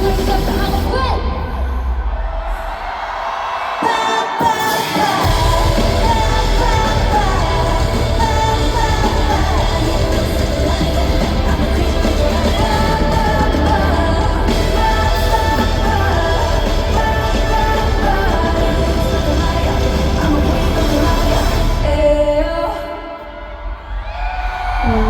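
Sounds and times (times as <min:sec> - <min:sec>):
women singing live: 0:00.0 - 0:01.7, 0:03.7 - 0:23.9, 0:24.6 - 0:25.0
amplified backing track with heavy bass: 0:05.2 - 0:22.3.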